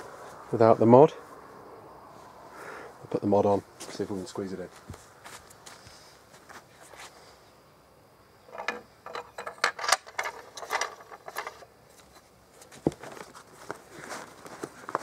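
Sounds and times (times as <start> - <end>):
rifle handling clicks and rattles: 8.5 - 12.2.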